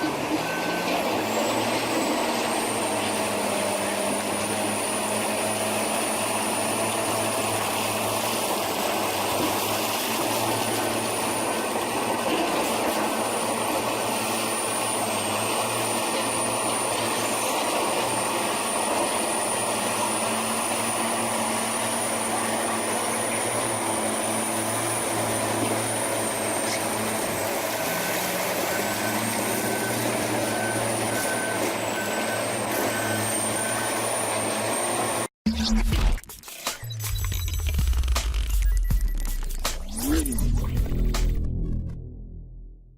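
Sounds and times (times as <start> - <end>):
reversing alarm beeping: 0.0 - 3.4, 25.6 - 35.8, 36.8 - 41.1
heavy diesel engine running: 0.0 - 35.3.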